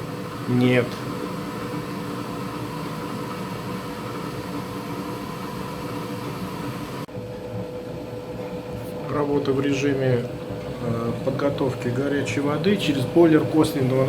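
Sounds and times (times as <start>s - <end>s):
boiler hum: 0.0s - 14.0s
gas burner rushing: 0.0s - 14.0s.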